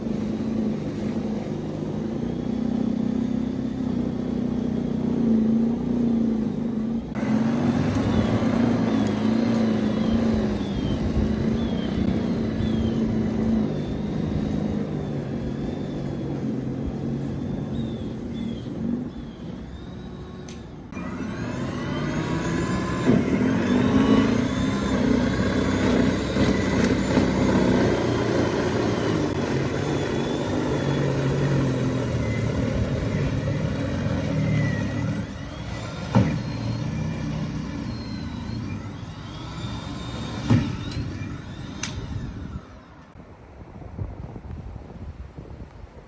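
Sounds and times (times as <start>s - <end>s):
snow blower running: 0.0s - 43.2s.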